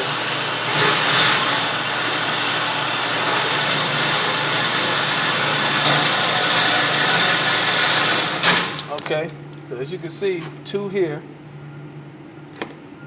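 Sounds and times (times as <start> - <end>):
motorised target carrier running: 0.0 - 9.2.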